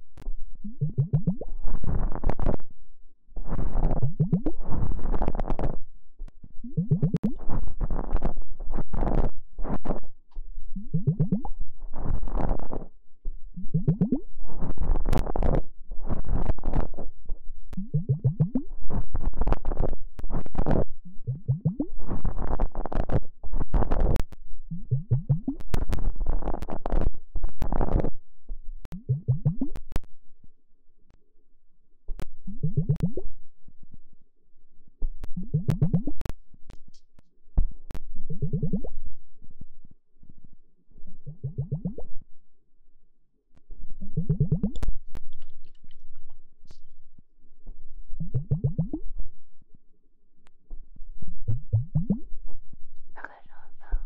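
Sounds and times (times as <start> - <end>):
squelchy plops: 0.7 - 1.4, 17.8 - 18.6, 21.3 - 21.9, 24.8 - 25.6, 28.9 - 29.8, 32.6 - 33.2, 35.4 - 36.2, 44.1 - 46.3
hands rubbing microphone: 44.2 - 47.0.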